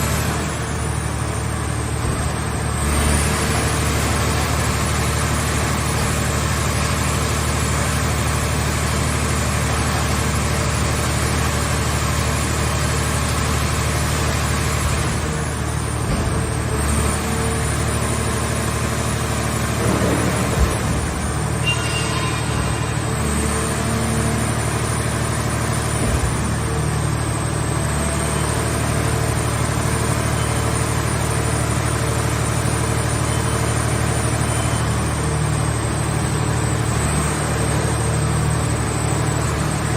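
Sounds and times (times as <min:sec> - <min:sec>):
hydraulic power unit humming: 0:00.1 - 0:39.9.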